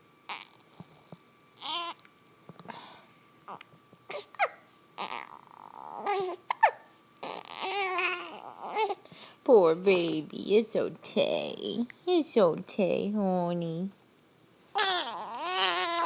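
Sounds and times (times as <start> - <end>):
baby whimpering and babbling: 1.6 - 2.0, 3.5 - 9.0, 14.8 - 16.0
baby hiccups: 4.1 - 5.3, 6.0 - 8.9.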